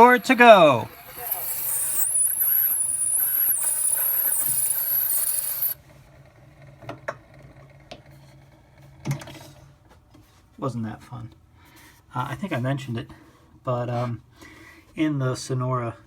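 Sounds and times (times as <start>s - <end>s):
stylus scraping hiss and squeal: 0.0s - 5.8s.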